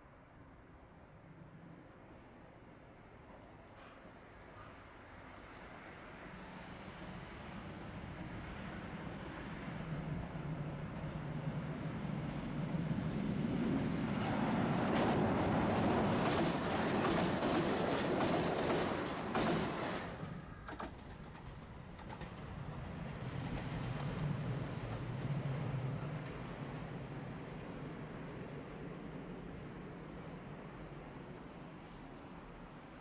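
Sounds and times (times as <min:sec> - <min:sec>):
train wheels on rails: 0:12.3 - 0:32.6.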